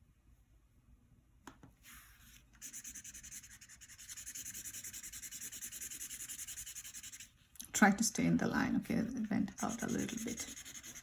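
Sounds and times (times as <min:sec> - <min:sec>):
marker scribbling on paper: 0:02.6 - 0:07.3, 0:09.5 - 0:11.0.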